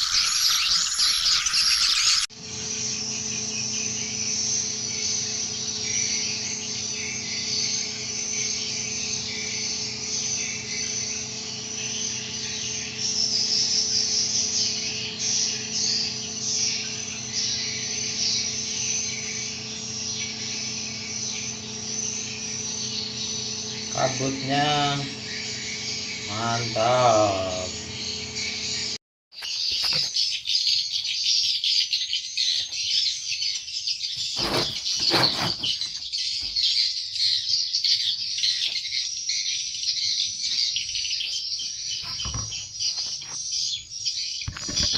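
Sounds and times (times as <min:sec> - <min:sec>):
low machine hum: 0:02.4 - 0:29.0.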